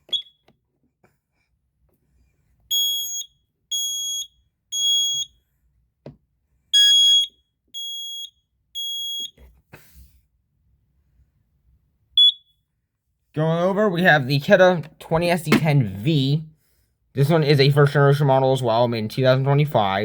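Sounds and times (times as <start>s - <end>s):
smoke alarm beeping: 0.0s - 0.4s, 2.7s - 5.4s, 6.8s - 9.4s, 12.2s - 12.5s.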